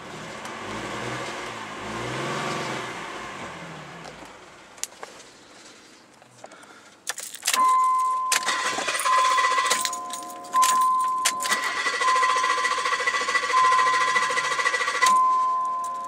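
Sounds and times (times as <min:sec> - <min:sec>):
keys jangling and clicking: 0:07.0 - 0:11.9, 0:14.4 - 0:16.0
high warning buzzer: 0:08.4 - 0:16.0.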